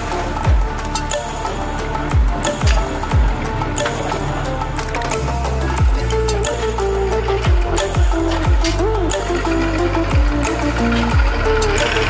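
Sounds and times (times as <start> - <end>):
background music with deep sliding bass: 0.0 - 12.0.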